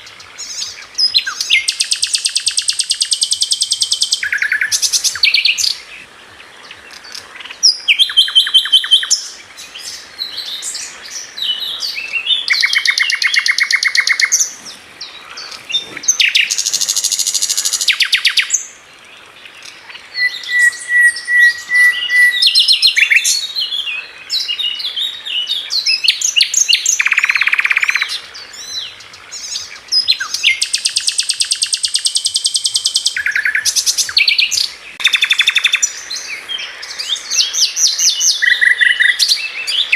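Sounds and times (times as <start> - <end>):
birds singing and chirping: 0.0 - 39.9
wavering whistle: 20.2 - 22.5.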